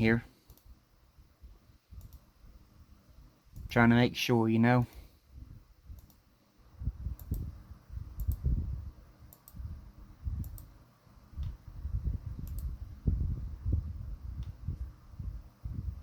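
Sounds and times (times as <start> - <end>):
sharp clicks: 0.4 - 0.7, 2.0 - 2.3, 5.9 - 6.2, 7.2 - 7.5, 8.2 - 8.5, 9.3 - 9.6, 10.4 - 10.7, 12.4 - 12.7.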